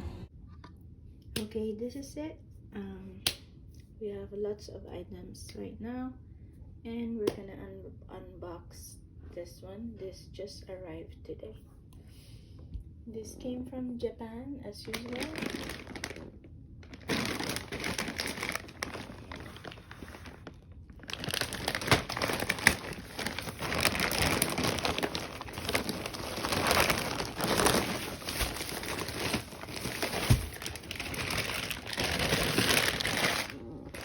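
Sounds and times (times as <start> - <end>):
packing paper and plastic rustling: 14.8 - 34.0.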